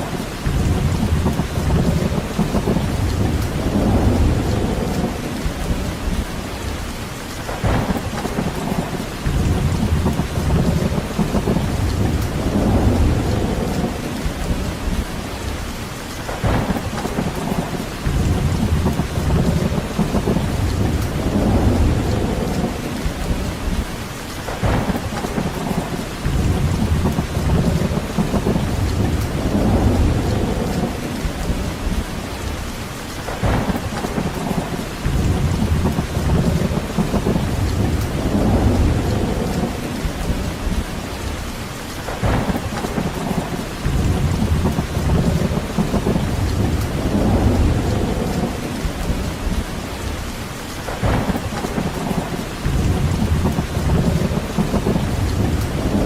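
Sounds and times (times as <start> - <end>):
heavy rain: 0.0 - 56.0
low rumbles: 0.4 - 6.7, 16.4 - 24.0, 24.6 - 32.7, 33.4 - 41.3, 42.2 - 50.2.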